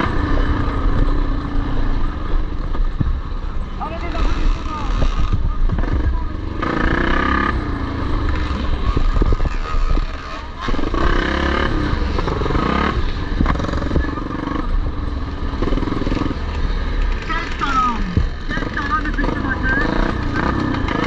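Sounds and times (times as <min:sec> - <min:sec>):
motorcycles revving: 0:00.0 - 0:21.0
voice over loudspeaker: 0:17.2 - 0:20.5.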